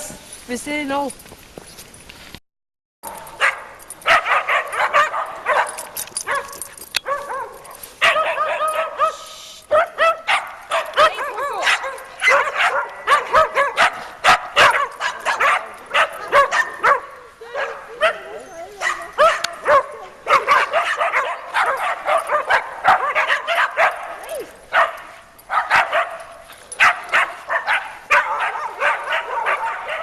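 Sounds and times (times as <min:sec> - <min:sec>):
dog yelping and whining: 0:10.8 - 0:30.0.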